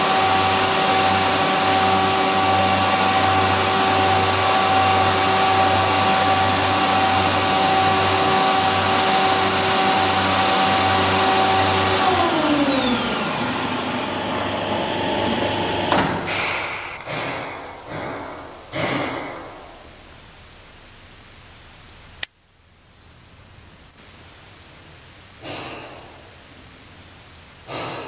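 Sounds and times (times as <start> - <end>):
planer machine whine and hum: 0.0 - 19.3
sharp knock: 15.9 - 19.5.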